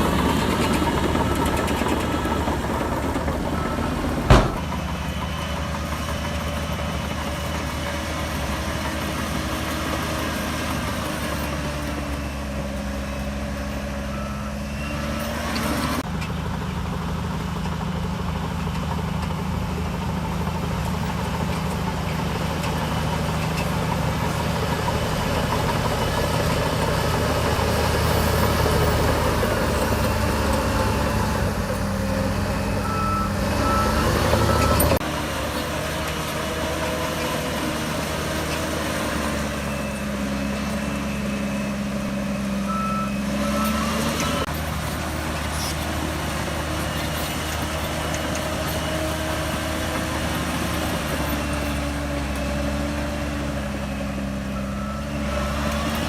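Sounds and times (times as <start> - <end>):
heavy diesel engine running: 0.0 - 56.0
sharp knock: 4.3 - 4.8.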